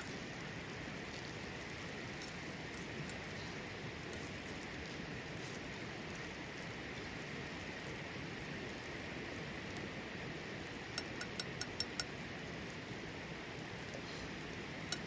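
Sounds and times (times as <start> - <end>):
steady rain-like hiss: 0.0 - 15.0
light ringing clinks: 11.0 - 12.2.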